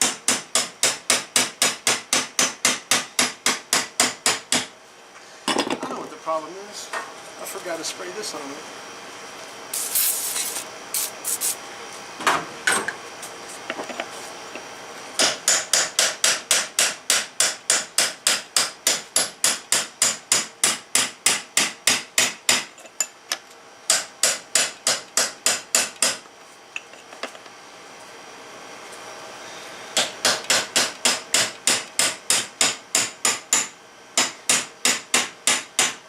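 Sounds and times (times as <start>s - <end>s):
aerosol spray hiss: 9.8s - 11.6s.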